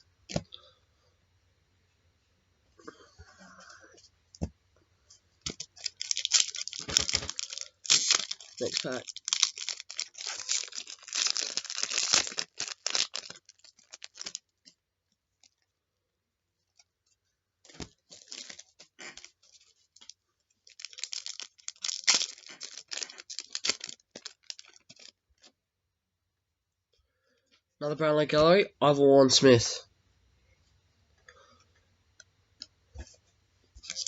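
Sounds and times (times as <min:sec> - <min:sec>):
card pack wrapper tearing: 0:05.5 - 0:14.5, 0:17.7 - 0:25.2.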